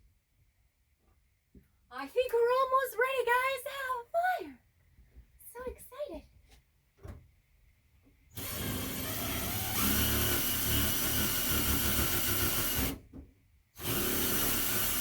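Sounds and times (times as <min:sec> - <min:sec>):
power drill running: 0:08.4 - 0:13.0, 0:13.8 - 0:15.0.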